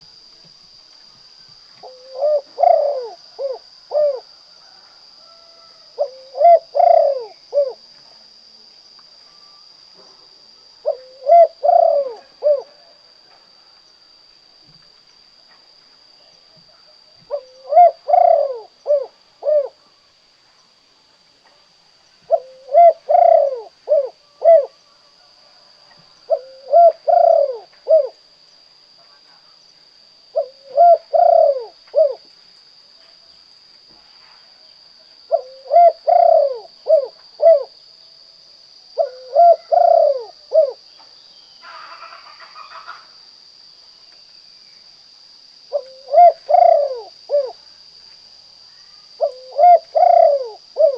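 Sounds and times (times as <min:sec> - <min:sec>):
faint steady high tone: 0:00.0 - 0:20.8, 0:45.7 - 0:50.9
dove cooing: 0:01.8 - 0:07.9, 0:10.8 - 0:13.0, 0:17.2 - 0:19.9, 0:22.3 - 0:24.8, 0:25.5 - 0:28.2, 0:30.3 - 0:32.3, 0:35.3 - 0:37.8, 0:39.0 - 0:40.8, 0:45.7 - 0:47.6, 0:49.2 - 0:50.9.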